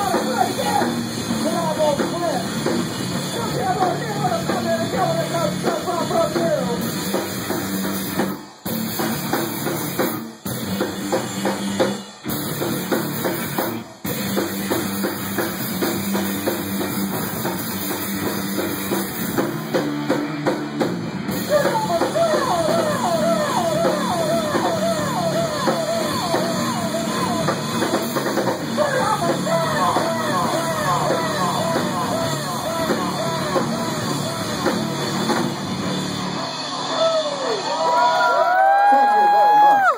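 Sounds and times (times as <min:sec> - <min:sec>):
drum kit: 0:00.0 - 0:39.9
rock band playing: 0:00.0 - 0:39.9.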